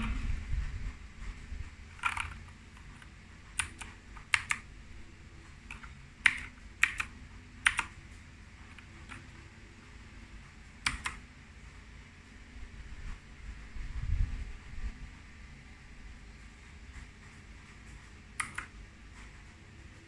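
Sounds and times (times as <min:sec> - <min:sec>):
mechanical keyboard key clicks: 0:02.0 - 0:02.4, 0:10.9 - 0:11.2, 0:18.4 - 0:18.7.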